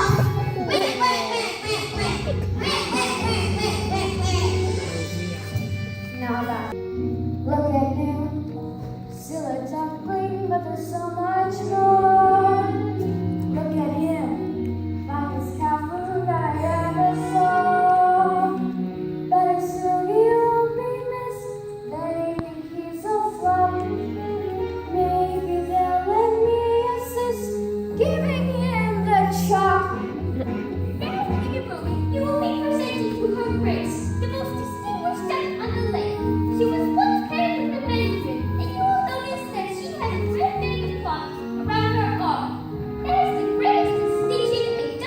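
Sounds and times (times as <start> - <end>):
child singing: 0.0 - 5.2, 31.0 - 42.3
instrumental accompaniment: 0.0 - 45.0.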